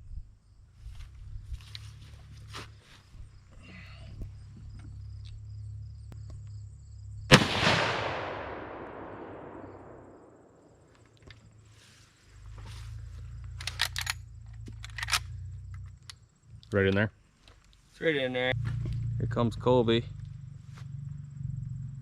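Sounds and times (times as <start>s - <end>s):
rifle shot with rolling echo: 7.3s - 10.8s
sharp clicks: 13.4s - 17.0s.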